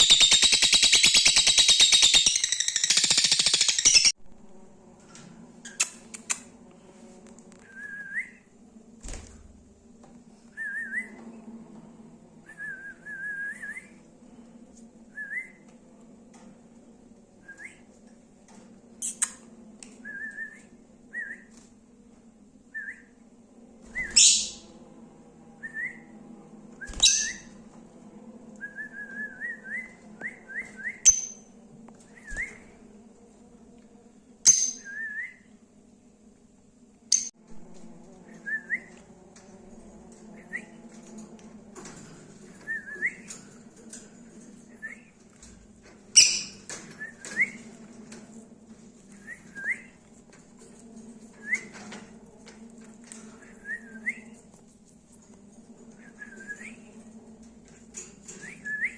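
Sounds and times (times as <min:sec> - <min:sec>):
lovebirds chirping: 0:00.0 - 0:04.2
sharp high-pitched bird calls: 0:00.0 - 0:04.2
faint low hum: 0:02.4 - 0:58.9.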